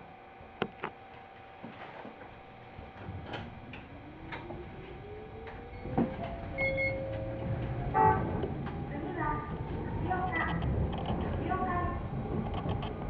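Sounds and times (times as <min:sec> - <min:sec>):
electric train motor whine: 0:00.0 - 0:13.0
train rumble: 0:01.7 - 0:13.0
wheels clicking on track: 0:02.8 - 0:13.0.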